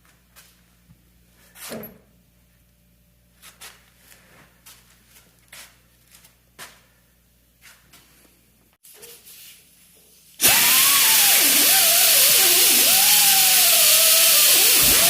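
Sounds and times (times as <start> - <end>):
electric power tool motor whine: 10.4 - 15.0.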